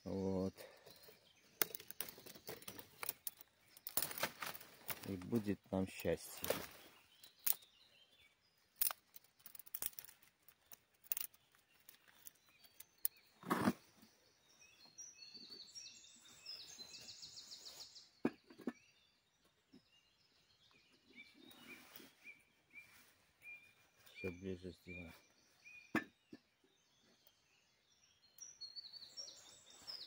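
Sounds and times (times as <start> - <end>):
wood snapping: 1.6 - 5.5, 6.1 - 6.8, 7.4 - 7.6, 8.8 - 12.4
songbird singing with trill: 5.0 - 8.8, 11.2 - 30.0.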